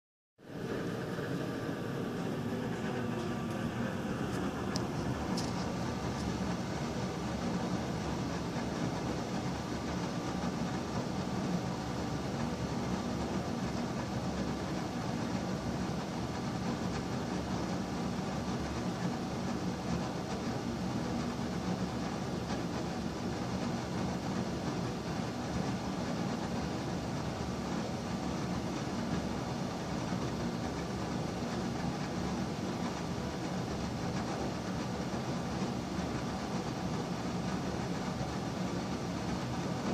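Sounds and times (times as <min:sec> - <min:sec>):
bathroom exhaust fan running: 0:00.4 - 0:39.9.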